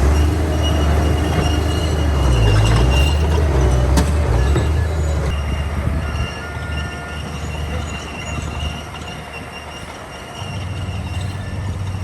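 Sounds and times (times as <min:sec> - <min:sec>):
bulldozer diesel engine under load: 0:00.0 - 0:12.0
high metallic track squeal: 0:00.0 - 0:12.0.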